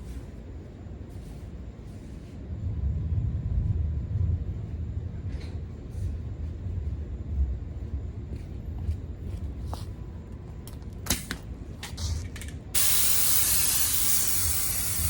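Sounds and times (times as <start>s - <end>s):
air blower rushing: 12.8s - 15.0s.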